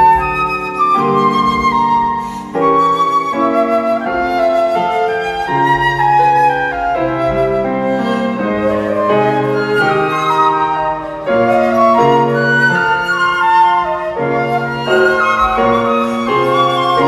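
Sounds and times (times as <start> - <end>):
flute ensemble playing chords: 0.0 - 17.0.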